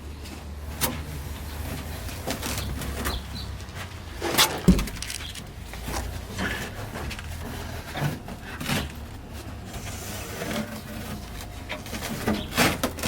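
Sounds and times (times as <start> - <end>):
low steady hum: 0.0 - 13.0
scraping and rubbing on car body: 0.7 - 13.0.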